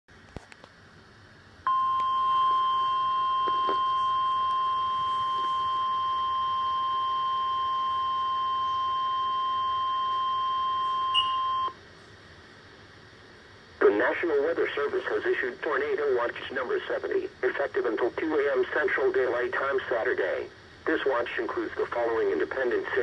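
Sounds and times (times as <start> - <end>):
piercing alarm tone: 1.7 - 11.8.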